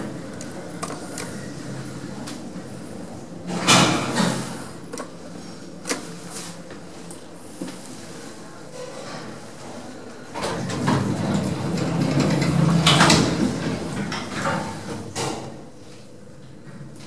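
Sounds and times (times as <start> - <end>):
lift doors sliding: 10.4 - 15.2.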